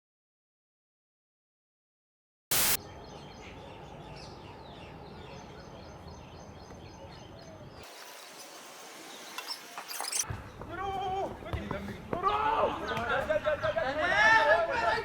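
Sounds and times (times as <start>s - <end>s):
thin hiss: 2.5s - 2.8s, 7.8s - 10.2s
birds chirping: 2.5s - 10.7s.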